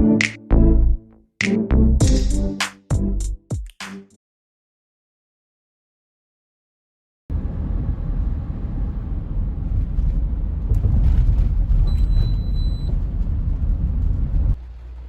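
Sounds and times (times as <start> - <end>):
vehicle rumble: 7.3 - 15.0.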